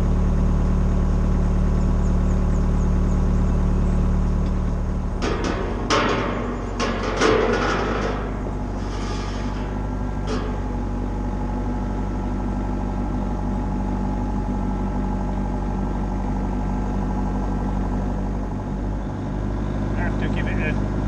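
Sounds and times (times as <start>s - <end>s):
excavator diesel engine running: 0.0s - 21.0s.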